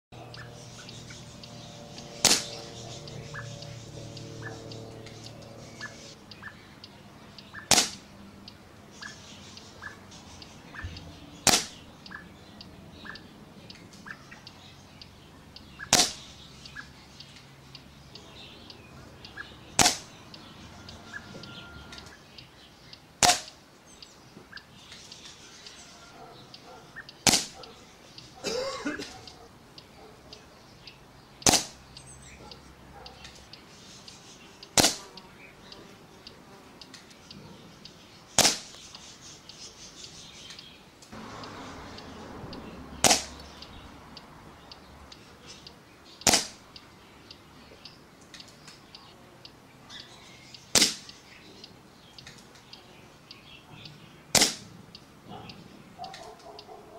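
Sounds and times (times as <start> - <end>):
air rifle shots: 2.2 - 2.6, 7.7 - 8.1, 11.4 - 11.8, 15.9 - 16.3, 19.8 - 20.1, 23.2 - 23.5, 27.2 - 27.6, 31.4 - 31.8, 34.8 - 35.1, 38.4 - 38.8, 43.0 - 43.3, 46.2 - 46.6, 50.7 - 51.1, 54.3 - 54.7.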